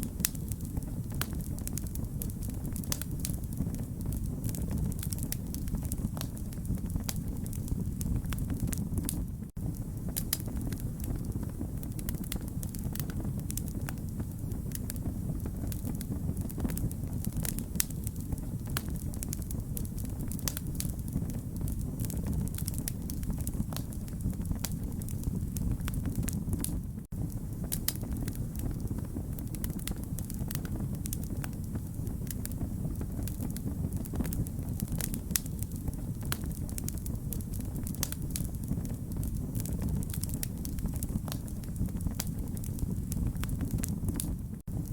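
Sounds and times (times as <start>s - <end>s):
wood fire crackling: 0.0s - 44.9s.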